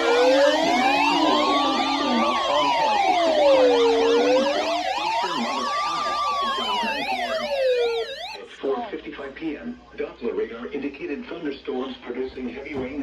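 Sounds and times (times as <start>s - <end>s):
siren fast yelping sweeps: 0.0s - 8.4s
siren slow wail: 0.0s - 8.4s.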